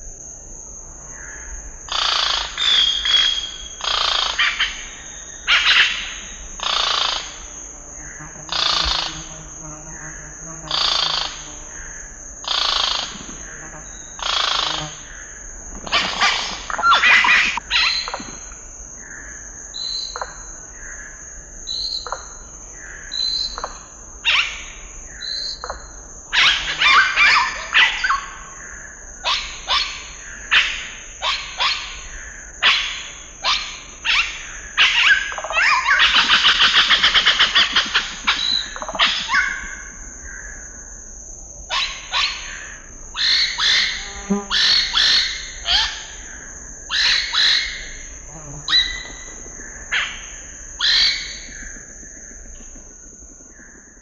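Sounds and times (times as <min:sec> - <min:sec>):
bird calling and whistling: 0:15.9 - 0:18.2.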